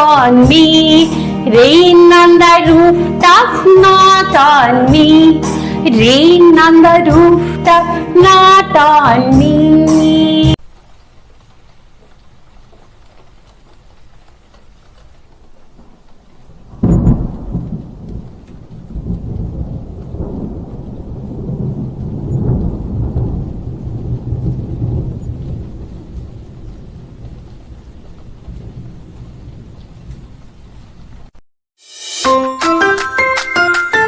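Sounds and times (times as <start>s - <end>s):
rain hissing: 0.5s - 3.4s, 10.3s - 32.2s
thunder clap and rumble: 15.7s - 31.4s.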